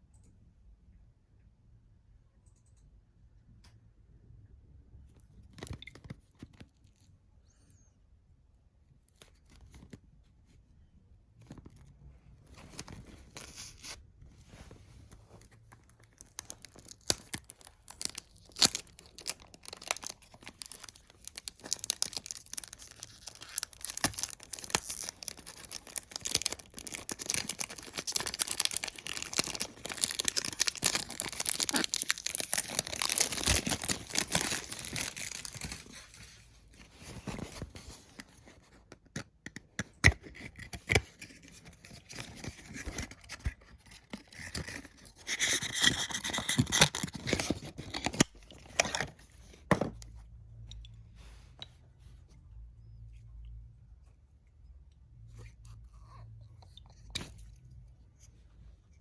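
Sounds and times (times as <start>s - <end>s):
plastic wrapping crinkling: 12.6s - 38.4s.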